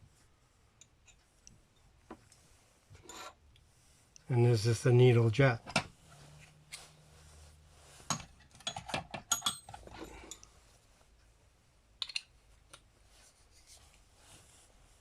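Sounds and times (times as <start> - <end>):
small metal parts clinking: 8.1 - 10.4.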